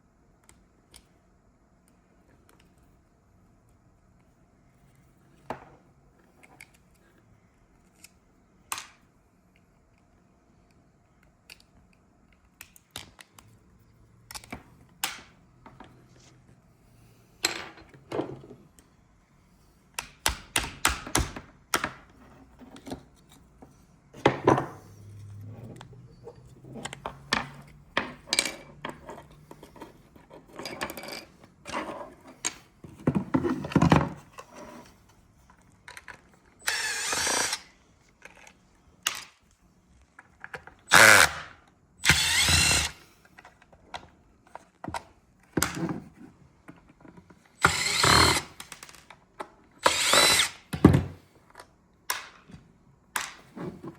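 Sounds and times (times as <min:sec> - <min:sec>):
tools clicking and knocking on plastic: 0:20.0 - 0:24.8, 0:25.8 - 0:34.5, 0:42.1 - 0:53.9.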